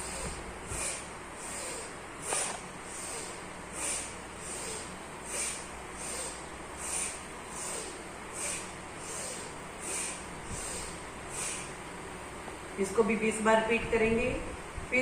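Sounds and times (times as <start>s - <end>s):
woman breathing forcefully through nose: 0.0s - 11.8s.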